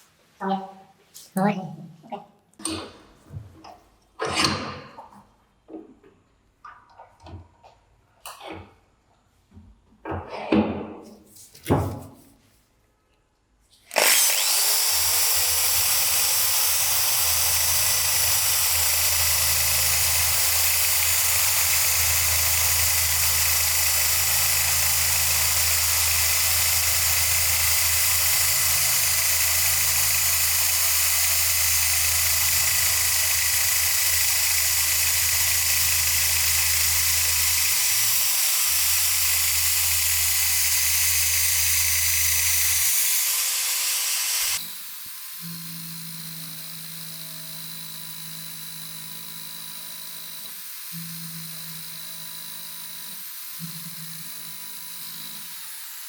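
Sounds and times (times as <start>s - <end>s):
power tool motor running: 13.8s - 56.0s.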